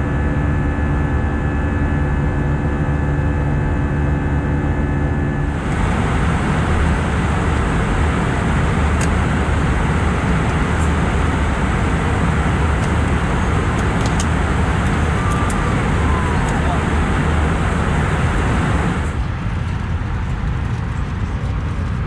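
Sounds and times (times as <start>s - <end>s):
airplane cabin noise: 5.4s - 22.0s
faint clicks: 5.7s - 17.1s.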